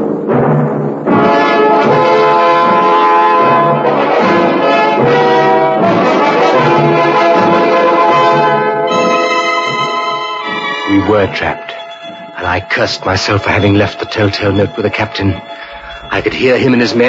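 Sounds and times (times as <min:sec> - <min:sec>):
orchestra with brass chords: 0:01.1 - 0:10.9.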